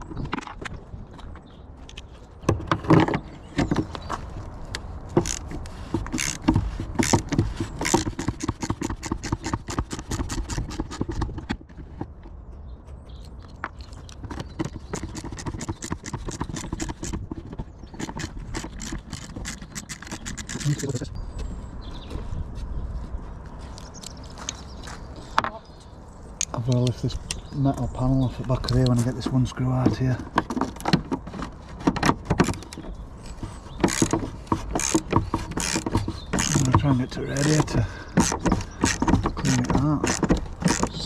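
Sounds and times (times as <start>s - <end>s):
hand tools clicking on fasteners: 4.7s - 12.2s, 13.2s - 21.1s, 28.4s - 41.0s.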